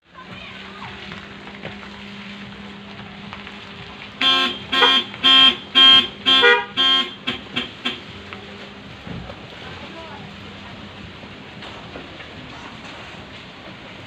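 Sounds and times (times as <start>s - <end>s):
vehicle horn honking: 4.2s - 8.2s.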